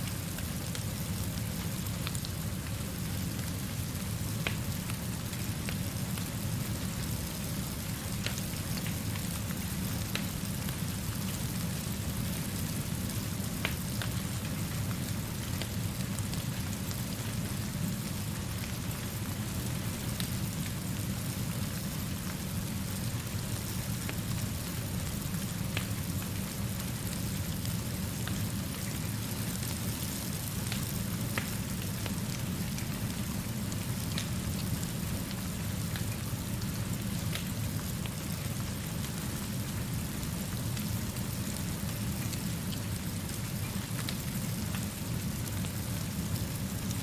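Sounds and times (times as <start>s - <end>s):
steady rainfall: 0.0s - 47.0s.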